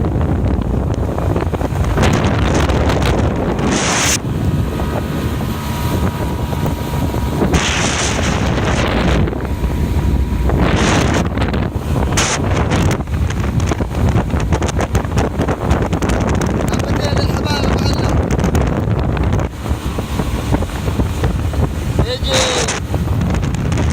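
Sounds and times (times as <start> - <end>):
steady low rumble: 0.0 - 23.9
wind buffeting microphone: 0.0 - 23.9
loud hissing rush: 21.6 - 22.8.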